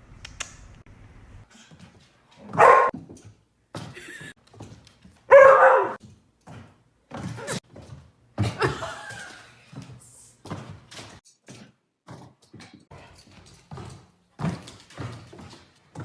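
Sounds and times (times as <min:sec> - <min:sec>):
dog barking: 0:02.4 - 0:03.0, 0:05.3 - 0:06.0.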